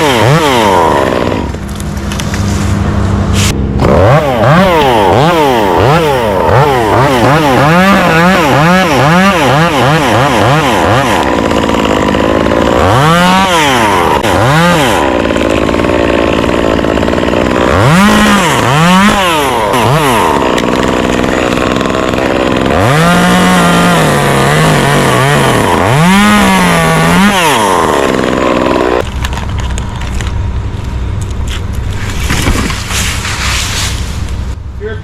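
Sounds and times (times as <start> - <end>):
chainsaw idling: 0.0 - 3.0, 3.7 - 31.4
chainsaw revving and cutting wood: 0.0 - 30.2, 31.4 - 34.6.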